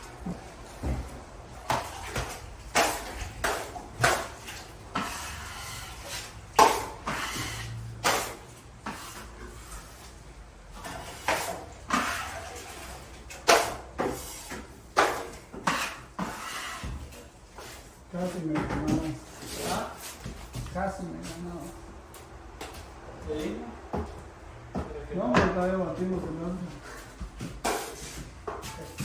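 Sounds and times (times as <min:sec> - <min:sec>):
metal tools scraping a bucket: 0:01.7 - 0:10.1, 0:10.8 - 0:20.3.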